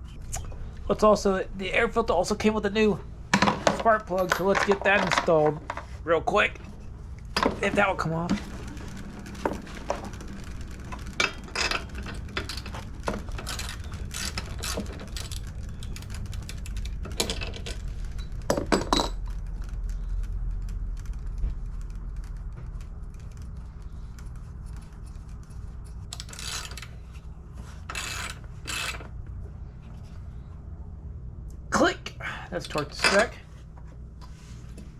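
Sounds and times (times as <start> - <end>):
steady low hum: 0.0 - 34.9
socket ratchet clicking: 13.4 - 17.0, 26.1 - 27.0, 27.8 - 29.1.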